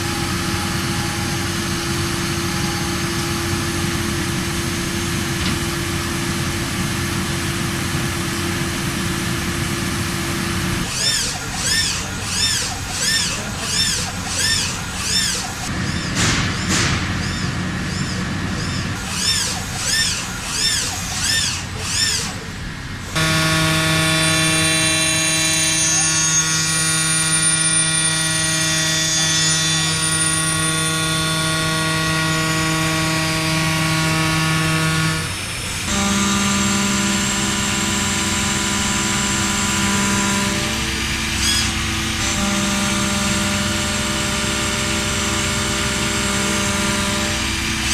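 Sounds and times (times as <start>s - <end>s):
machine cutting steel whine: 0.0s - 47.9s.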